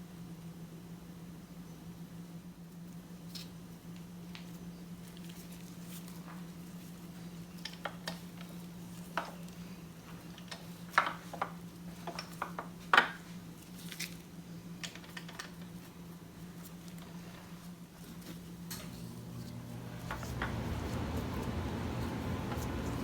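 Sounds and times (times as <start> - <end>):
steady low hum: 18.7 - 23.0.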